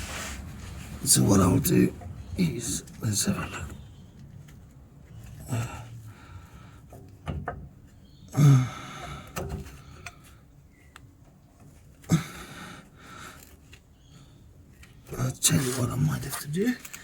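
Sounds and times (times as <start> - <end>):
knocks and clunks of exhaust: 0.0 - 12.6.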